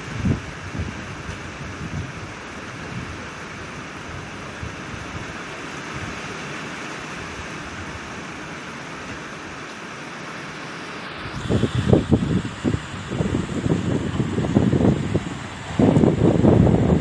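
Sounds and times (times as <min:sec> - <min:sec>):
wind buffeting microphone: 0:00.0 - 0:06.2, 0:11.2 - 0:17.0
falling rain: 0:00.0 - 0:17.0.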